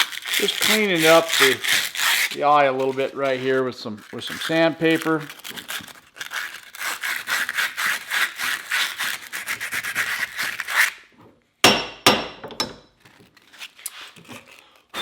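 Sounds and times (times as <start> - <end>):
sandpaper rubbing strokes: 0.0 - 5.3, 6.3 - 11.0.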